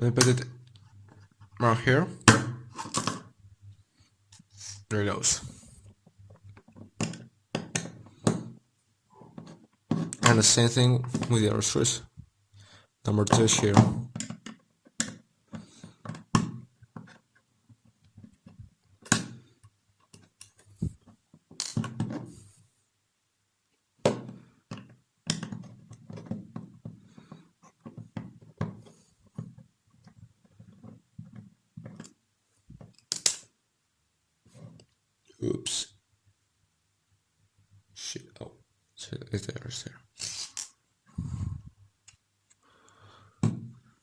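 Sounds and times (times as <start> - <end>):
items handled on a table: 2.2 - 3.4, 9.2 - 10.4, 13.3 - 22.6, 24.1 - 33.4.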